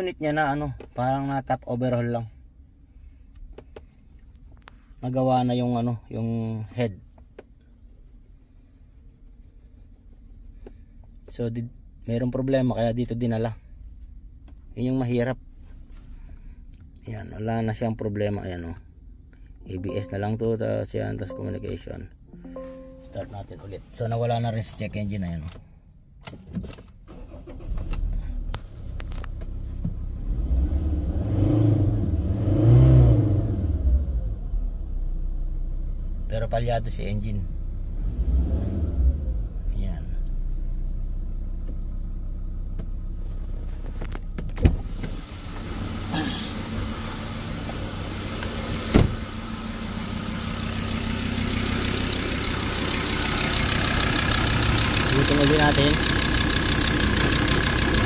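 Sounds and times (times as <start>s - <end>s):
misfiring car engine revving: 45.7s - 58.0s.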